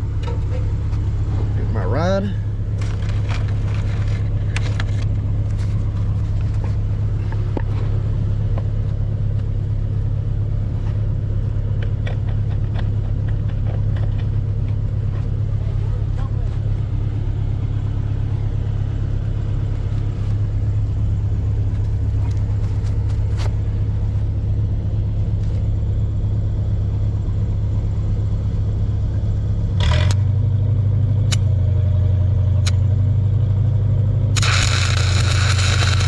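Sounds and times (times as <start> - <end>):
welding machine engine running: 1.4 - 7.6, 34.3 - 36.0
welding arc crackling: 34.4 - 36.0.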